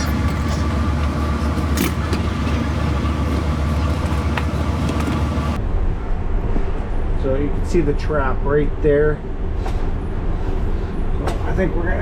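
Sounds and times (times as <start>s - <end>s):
low mechanical drone: 0.0s - 7.2s.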